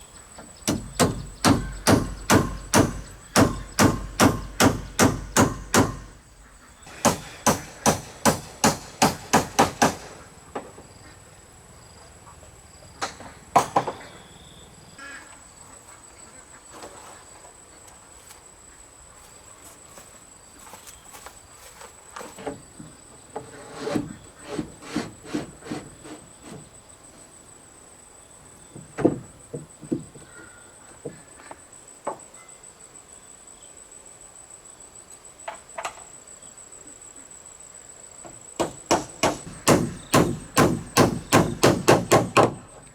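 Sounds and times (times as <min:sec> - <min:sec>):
hand hammering: 0:00.6 - 0:06.2, 0:06.9 - 0:10.1, 0:38.6 - 0:42.6.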